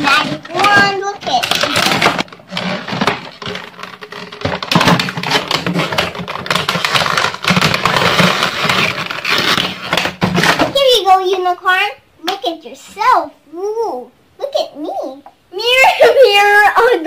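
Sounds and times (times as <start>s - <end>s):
plastic packaging crinkling: 0.0s - 10.6s.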